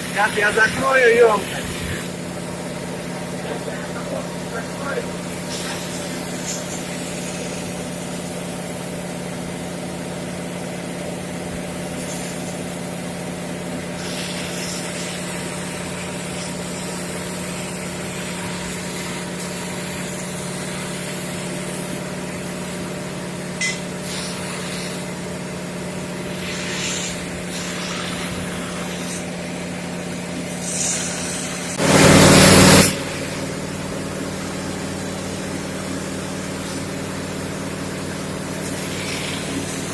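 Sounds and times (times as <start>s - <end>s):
pump engine running: 0.0s - 39.9s
loud rushing burst: 31.8s - 33.2s.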